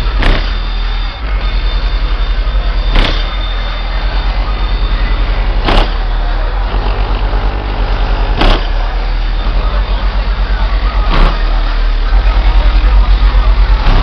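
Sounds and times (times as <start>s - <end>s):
distorted deep bass from subwoofers: 0.0s - 14.0s
sharp cracks: 5.6s - 6.1s, 8.4s - 8.9s.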